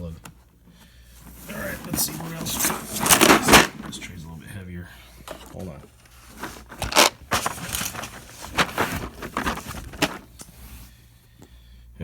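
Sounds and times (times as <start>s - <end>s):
quiet handling noise: 0.0s - 11.6s
loose tools clattering: 1.4s - 4.2s, 5.3s - 10.3s.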